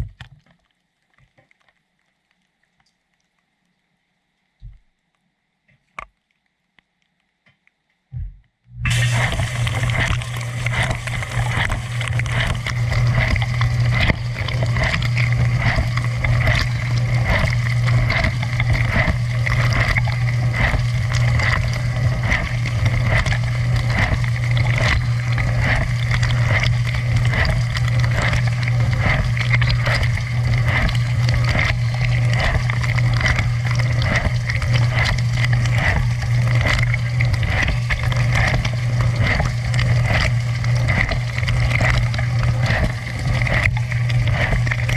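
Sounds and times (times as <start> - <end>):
dishwasher pump hum: 8.8 - 44.9
water spraying and splashing: 8.9 - 19.9.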